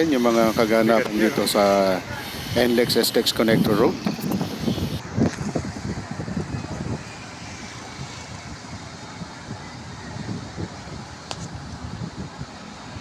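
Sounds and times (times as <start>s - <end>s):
outdoor rumble: 0.0s - 9.8s
wind buffeting microphone: 0.0s - 13.0s.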